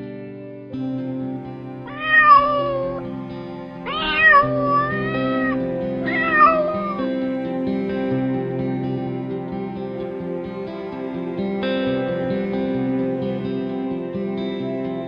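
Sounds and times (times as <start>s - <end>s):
soft acoustic guitar music: 0.0s - 15.0s
drawn-out animal calls: 3.9s - 7.1s.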